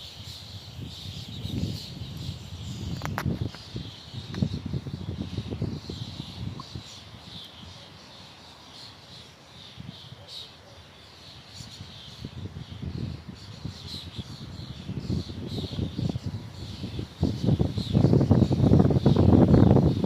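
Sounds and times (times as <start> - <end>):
small birds chirping: 0.0 - 20.0
wind gusts rumbling: 0.6 - 7.2, 12.2 - 20.0.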